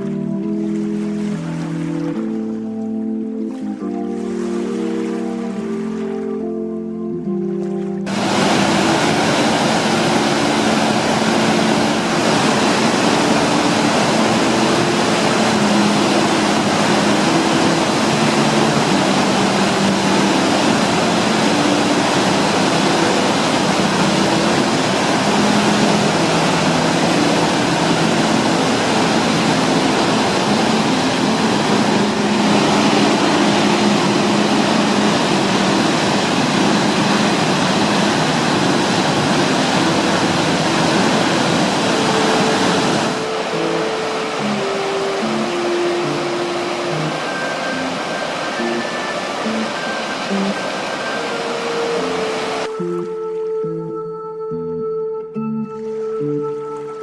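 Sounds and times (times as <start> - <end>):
soft background music: 0.0 - 57.0
waterfall roaring: 8.0 - 53.5.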